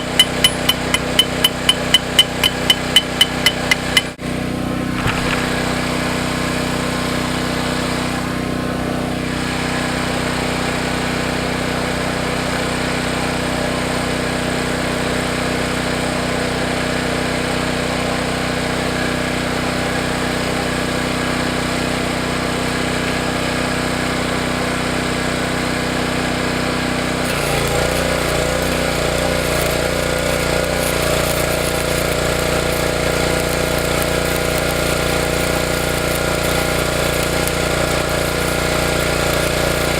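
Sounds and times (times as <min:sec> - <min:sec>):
welder machine hum: 0:00.0 - 0:39.9
welding arc crackle and hiss: 0:05.0 - 0:06.2, 0:27.1 - 0:39.9.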